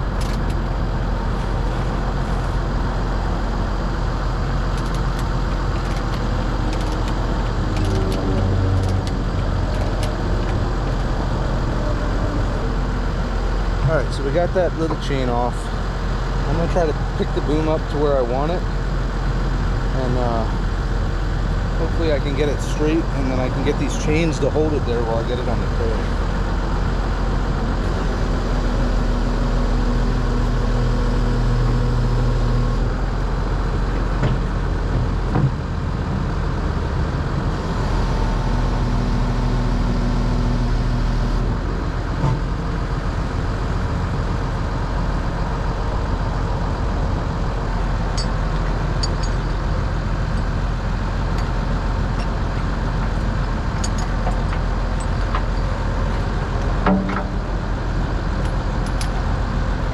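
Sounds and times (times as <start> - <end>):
excavator diesel engine running: 0.0 - 59.9
pitched hum under load: 0.0 - 59.9.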